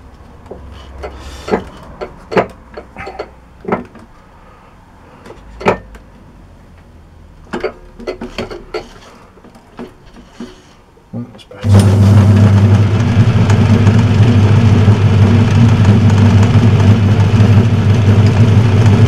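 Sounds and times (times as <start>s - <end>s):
lathe clicks and knocks: 0.5s - 2.9s.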